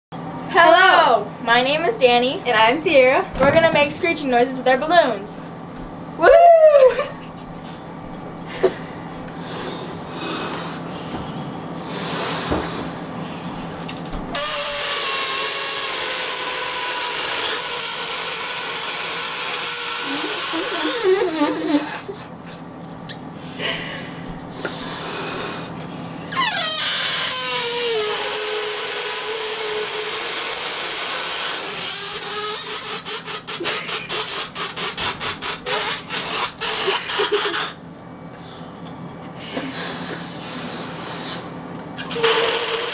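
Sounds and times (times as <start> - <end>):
air squealing out of balloons: 14.3 - 22.3, 24.1 - 37.8, 39.5 - 42.9.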